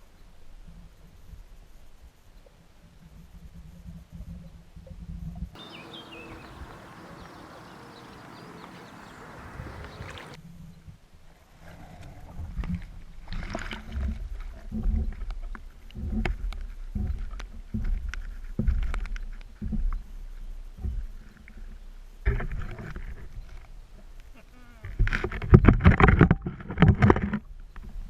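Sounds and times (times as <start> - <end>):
muffled low thuds: 12.4 - 21.3
rig knocking and bumping underwater: 12.4 - 21.3, 22.2 - 23.4, 24.9 - 28.0.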